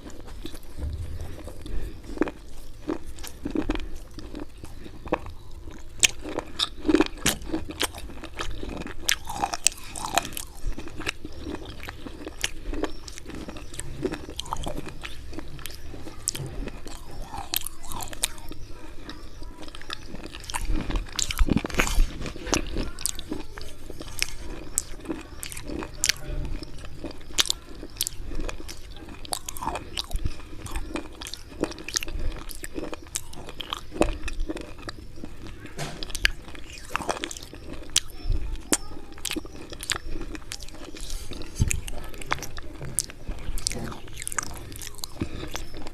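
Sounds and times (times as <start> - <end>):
chalk crunching between teeth: 0.0 - 45.9
teeth grinding chalk: 0.0 - 45.9.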